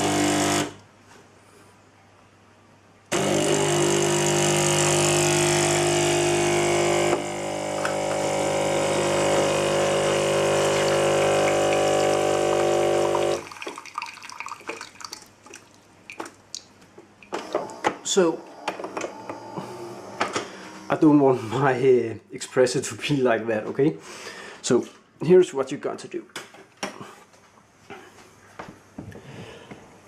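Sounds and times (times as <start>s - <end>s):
espresso machine water pump: 0.0s - 0.7s, 3.1s - 13.4s.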